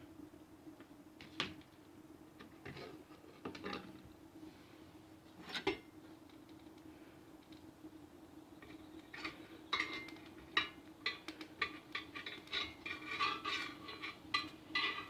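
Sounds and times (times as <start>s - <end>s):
faint steady hum: 0.0s - 15.0s
metal utensil clinking on skillet: 9.2s - 15.0s.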